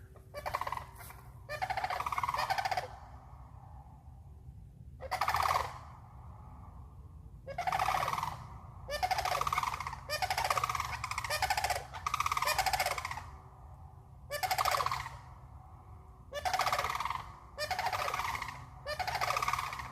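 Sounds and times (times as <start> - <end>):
cranes bugling: 0.0 - 3.4, 7.6 - 13.4, 16.4 - 19.9.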